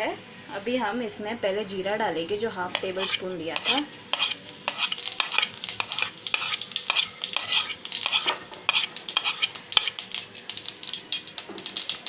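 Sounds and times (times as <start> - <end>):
seeds spluttering in hot oil: 2.7 - 12.0.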